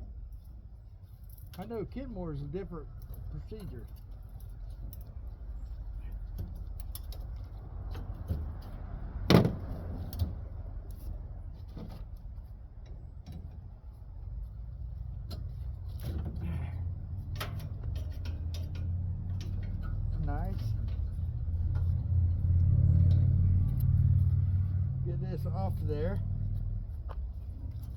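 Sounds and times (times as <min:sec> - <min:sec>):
low rumble: 0:12.5 - 0:27.9.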